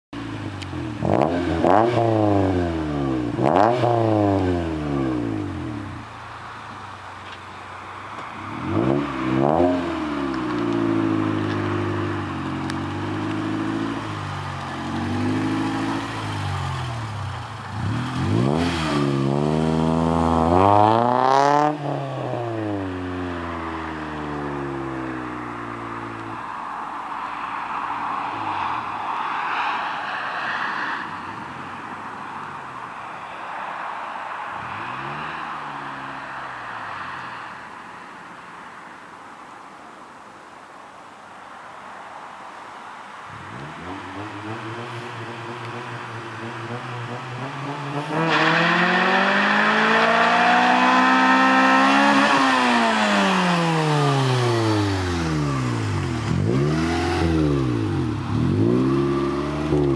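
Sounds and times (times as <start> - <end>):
car engine revving: 0.2 - 6.9, 8.1 - 26.5, 43.3 - 59.9.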